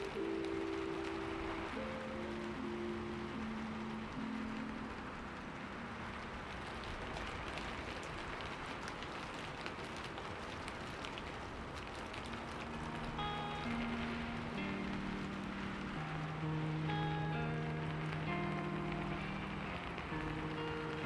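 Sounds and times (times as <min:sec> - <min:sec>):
piano notes: 0:00.0 - 0:06.8, 0:12.5 - 0:21.0
fire crackling: 0:00.0 - 0:21.0.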